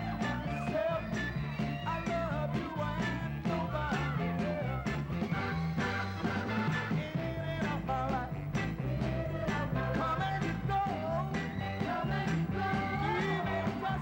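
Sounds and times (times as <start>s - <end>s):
lead vocal singing: 0.0s - 14.0s
soul record playing: 0.0s - 14.0s.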